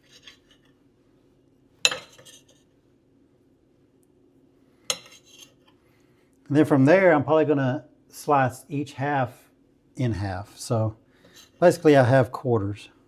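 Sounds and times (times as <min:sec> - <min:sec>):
cutlery clatter: 0:01.9 - 0:02.6, 0:04.9 - 0:05.6
knife clinking on plate: 0:01.9 - 0:02.6, 0:04.9 - 0:05.6.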